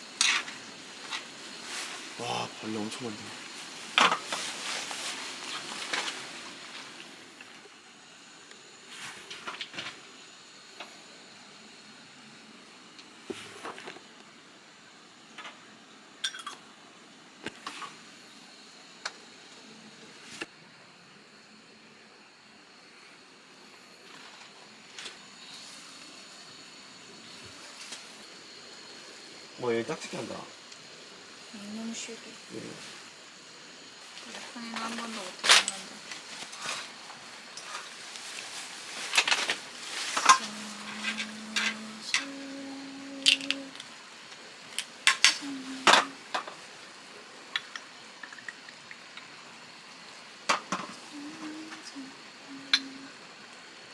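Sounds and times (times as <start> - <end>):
faint steady hiss: 0.0 - 53.9
dishes clinking: 16.2 - 16.6.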